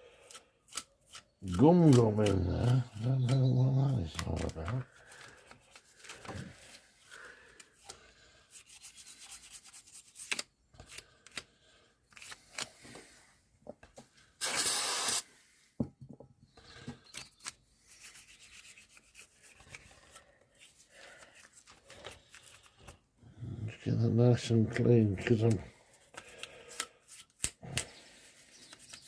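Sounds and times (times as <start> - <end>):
cleaning spray hiss: 14.4 - 15.3.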